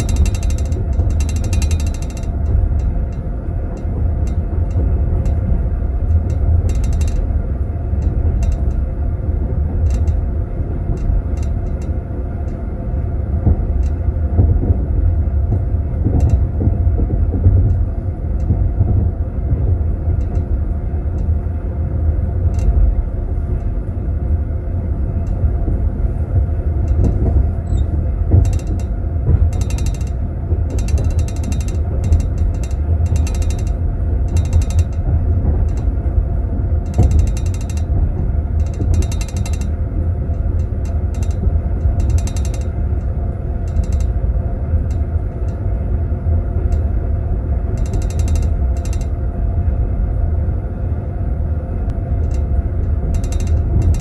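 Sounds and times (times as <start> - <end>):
train wheels rumbling: 0.0 - 54.0.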